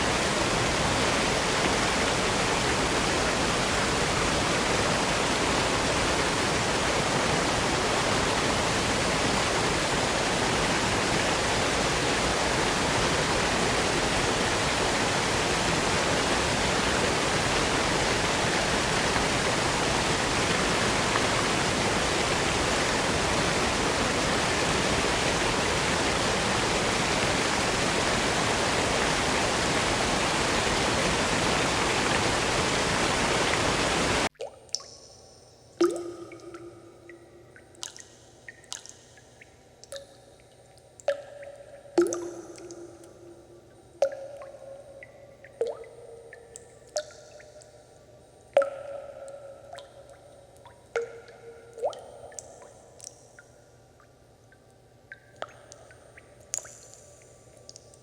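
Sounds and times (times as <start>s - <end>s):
rushing water: 0.0s - 34.8s, 41.0s - 47.7s.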